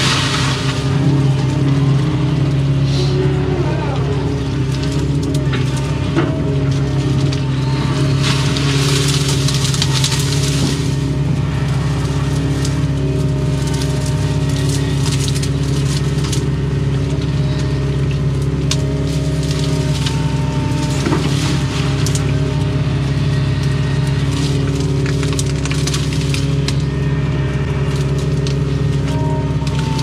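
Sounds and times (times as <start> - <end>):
bucket crunching dirt: 0.0 - 3.1, 3.8 - 30.0
excavator diesel engine running: 0.0 - 30.0.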